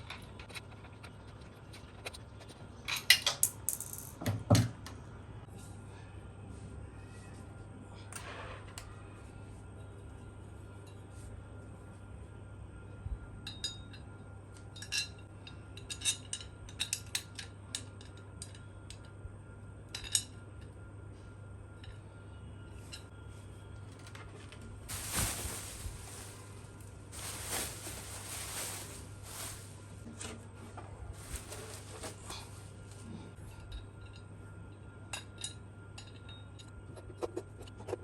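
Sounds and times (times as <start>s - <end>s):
rustling and scraping: 23.9s - 33.3s.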